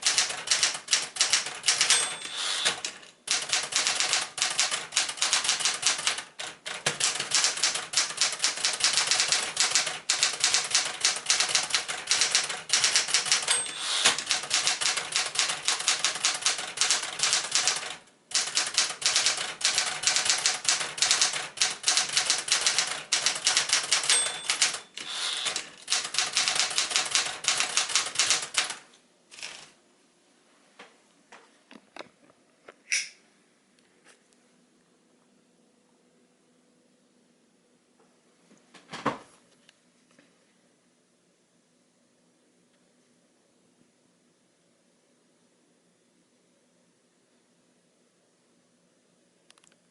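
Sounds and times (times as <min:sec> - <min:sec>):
typewriter bell ring: 0:00.0 - 0:06.0, 0:07.1 - 0:28.7
manual typewriter typing: 0:00.0 - 0:29.8.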